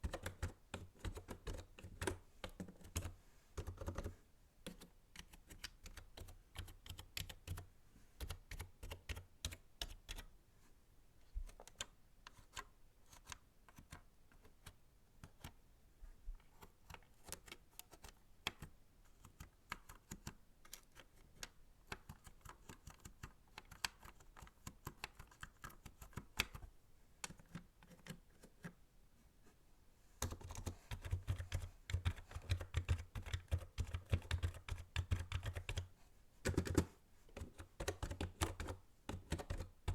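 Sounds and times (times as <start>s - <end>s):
computer keyboard typing: 0.0s - 4.1s, 4.7s - 10.2s, 30.2s - 35.9s, 36.5s - 39.9s.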